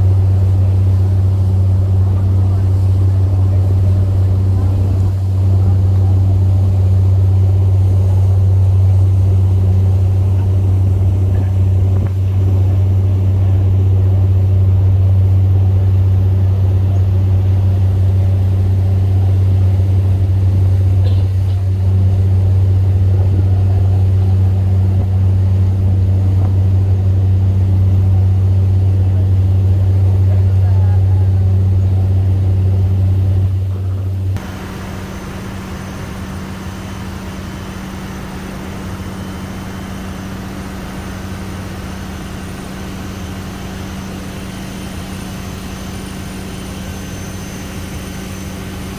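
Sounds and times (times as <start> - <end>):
boat engine droning: 0.0 - 48.9.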